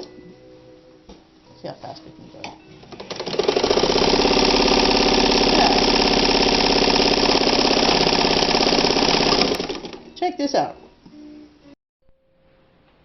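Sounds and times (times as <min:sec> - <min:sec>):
sewing machine whirring: 0:03.0 - 0:10.1.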